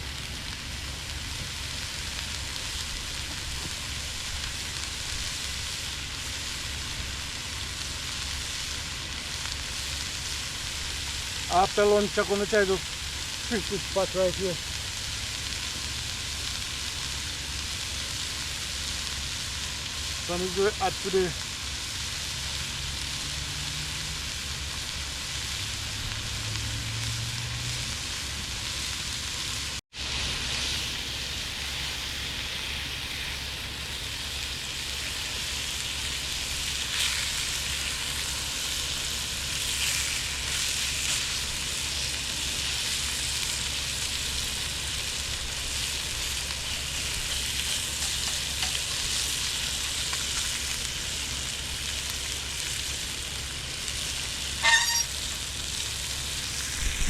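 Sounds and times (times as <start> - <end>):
food sizzling in a pan: 0.0 - 57.0
stirring in a pan: 44.6 - 51.7.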